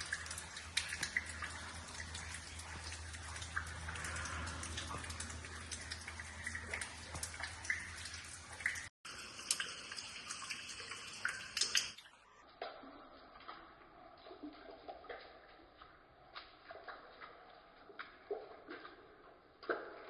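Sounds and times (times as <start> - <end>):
running water: 0.0 - 20.0
water splashes and drips: 0.0 - 20.0.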